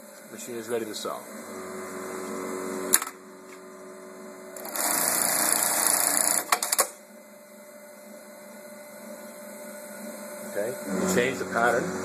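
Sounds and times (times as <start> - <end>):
electrical hum: 0.0 - 12.0
sewing machine stitching: 4.6 - 6.8.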